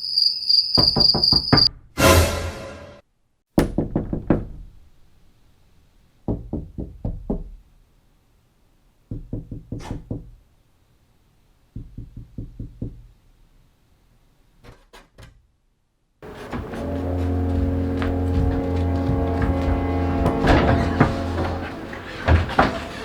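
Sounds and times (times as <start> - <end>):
rapid knocking: 16.2 - 23.0.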